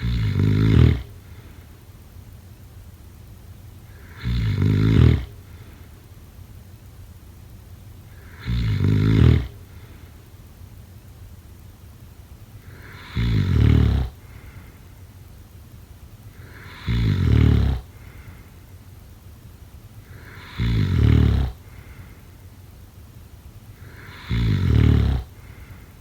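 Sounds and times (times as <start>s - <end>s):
loud snoring: 0.0s - 1.2s, 3.9s - 5.6s, 8.1s - 10.0s, 12.6s - 14.5s, 16.3s - 18.3s, 20.0s - 21.9s, 23.8s - 25.8s.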